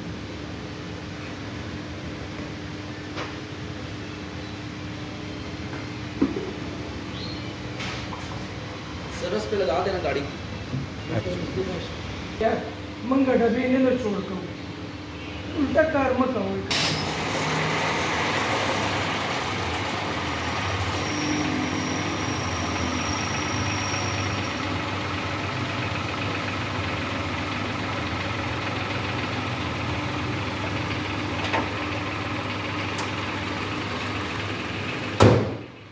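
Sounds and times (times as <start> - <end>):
car engine idling: 17.0 - 35.9.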